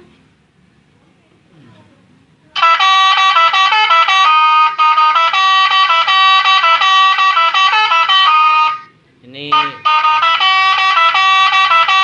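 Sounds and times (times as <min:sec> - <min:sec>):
bus horn melody: 0:02.6 - 0:12.0.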